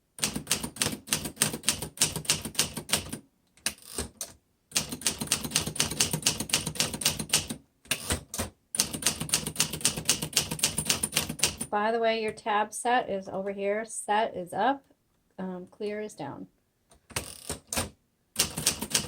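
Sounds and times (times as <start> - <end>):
manual typewriter key strikes: 0.2 - 11.7, 17.1 - 19.0.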